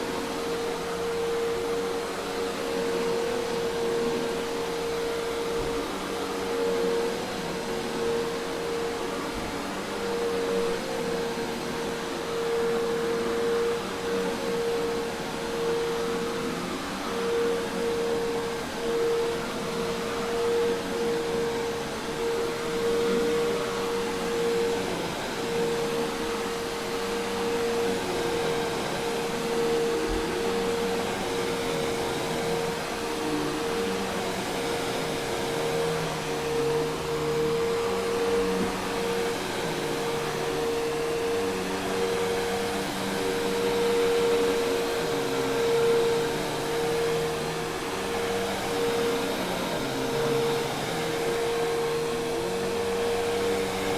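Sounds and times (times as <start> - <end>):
vacuum cleaner running: 0.0 - 53.9.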